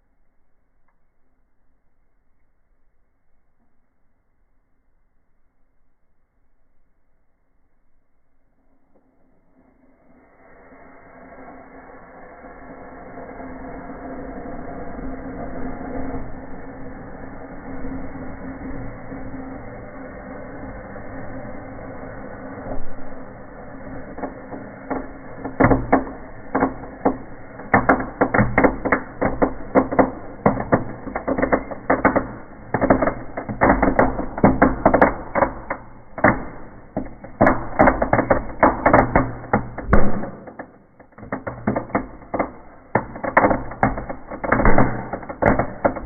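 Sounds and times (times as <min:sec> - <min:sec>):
firework crackling in fire: 0:09.5 - 0:46.0.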